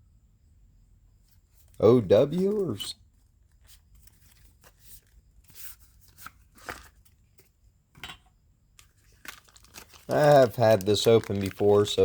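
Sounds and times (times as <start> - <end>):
packaging clicks taps and rustles: 8.7 - 12.0.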